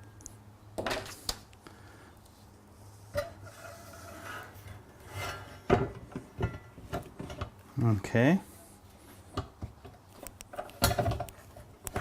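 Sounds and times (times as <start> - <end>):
band saw scraping on plate: 3.1 - 5.8.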